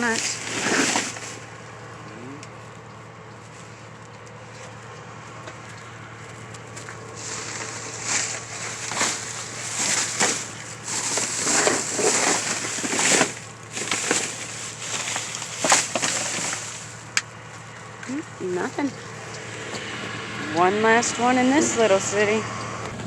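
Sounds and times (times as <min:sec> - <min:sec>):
trash bags rustling and crunching: 0:00.0 - 0:02.0, 0:05.6 - 0:19.3.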